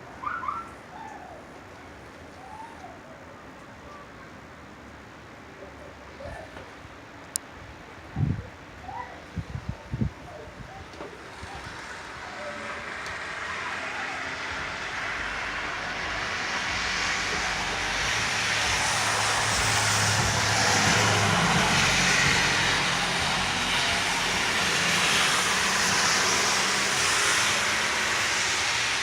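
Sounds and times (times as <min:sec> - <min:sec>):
engine running with rushing noise: 0:09.5 - 0:29.0
low hum: 0:12.8 - 0:26.2.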